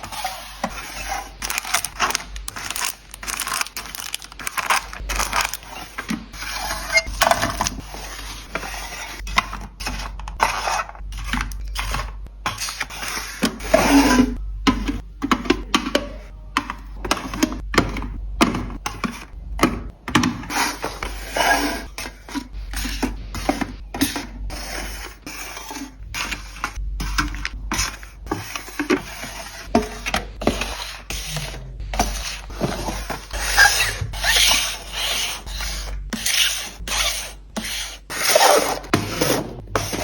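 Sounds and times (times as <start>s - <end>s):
plastic packaging being handled: 0.0s - 13.6s.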